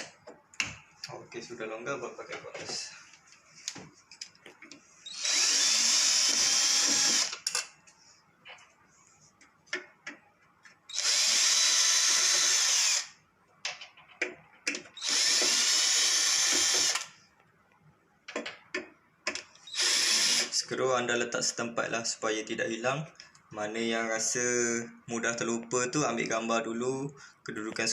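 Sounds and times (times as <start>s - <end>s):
cordless drill running: 5.0s - 7.4s, 10.9s - 13.1s, 15.0s - 17.1s, 19.7s - 20.5s.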